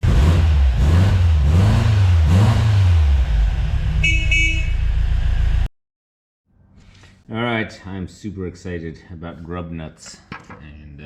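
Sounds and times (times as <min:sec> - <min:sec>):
car engine revving: 0:00.0 - 0:05.7
car horn toots: 0:03.9 - 0:05.0.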